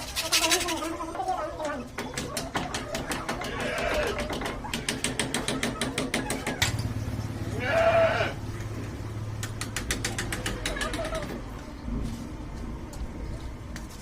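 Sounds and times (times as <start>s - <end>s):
bleat-like animal call: 3.5s - 4.2s, 7.5s - 8.4s.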